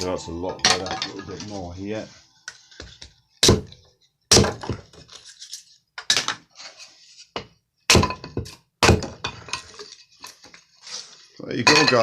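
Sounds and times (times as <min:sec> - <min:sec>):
hatchet chopping kindling: 0:04.3 - 0:04.8, 0:07.9 - 0:09.2.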